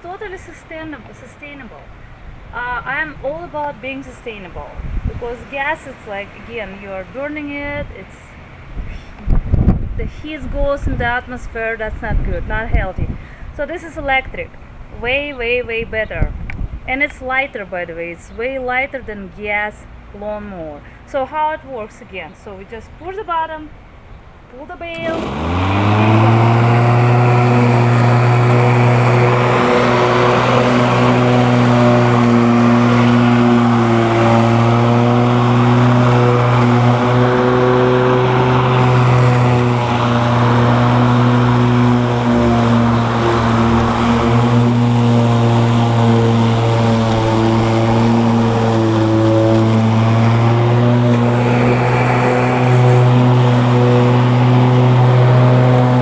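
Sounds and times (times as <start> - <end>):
electric lawn mower humming: 24.9 - 56.0.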